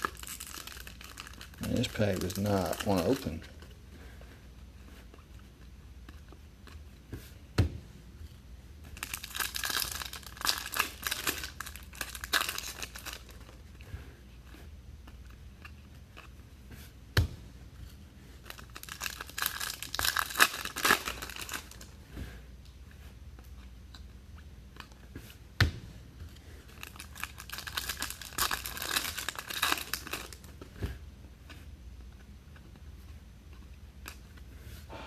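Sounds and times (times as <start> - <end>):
foil wrapper tearing and crinkling: 0.0 - 3.4, 9.0 - 13.5, 18.5 - 21.9, 26.7 - 30.5.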